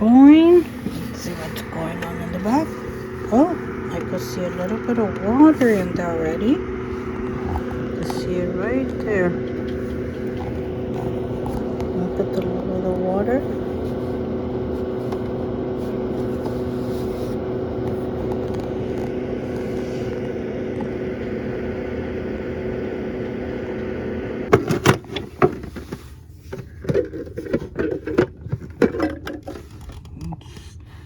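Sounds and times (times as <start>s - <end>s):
dehumidifier humming: 0.0s - 31.0s.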